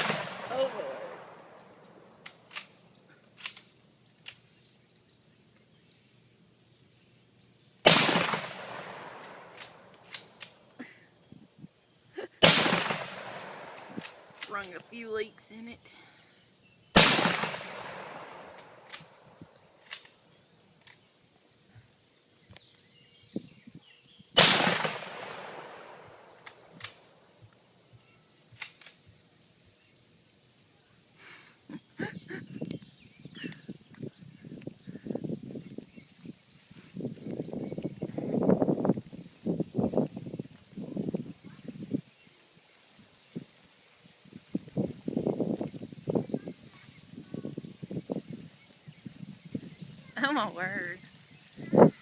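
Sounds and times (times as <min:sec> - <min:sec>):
loud gunshot with echo: 0:00.0 - 0:01.4, 0:07.9 - 0:09.4, 0:12.4 - 0:13.8, 0:17.0 - 0:18.4, 0:24.4 - 0:26.0.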